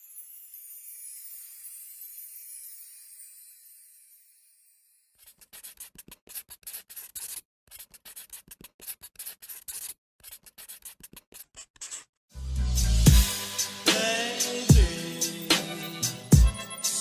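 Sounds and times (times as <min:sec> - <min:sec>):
scratching and rubbing on surface: 0:05.2 - 0:12.1.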